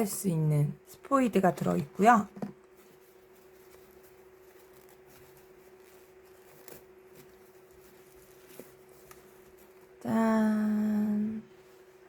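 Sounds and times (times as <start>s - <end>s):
low steady hum: 0.0s - 12.0s.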